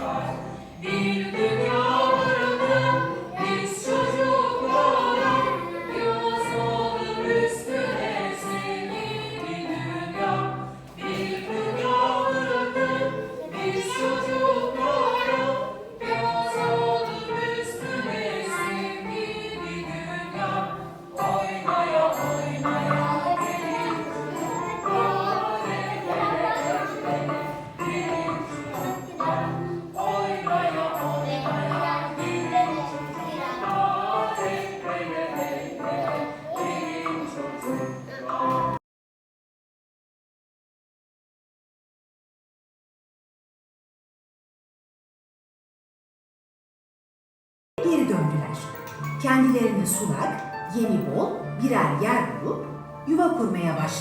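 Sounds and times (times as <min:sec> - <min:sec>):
group singing with instruments: 0:00.0 - 0:38.8.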